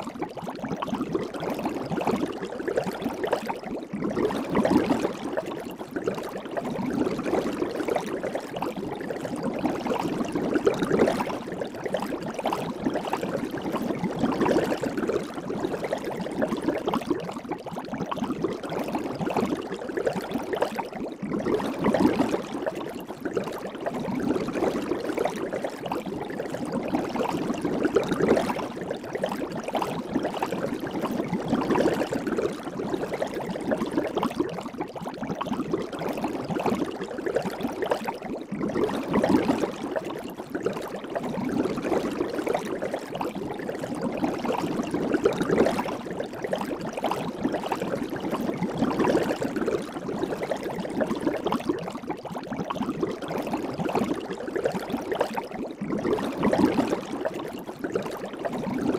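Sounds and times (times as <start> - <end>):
soap bubbles fizzing and crackling: 0.0 - 58.9.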